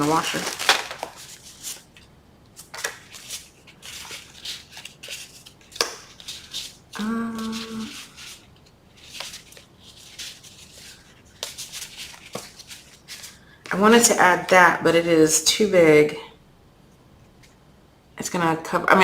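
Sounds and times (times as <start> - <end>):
paper rustling: 0.0 - 13.5
person humming: 7.0 - 8.1.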